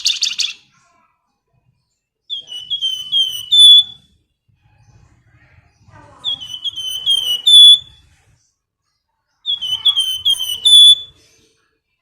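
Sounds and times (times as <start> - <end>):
songbird whistled call: 2.3 - 4.1, 6.2 - 8.1, 9.5 - 11.2.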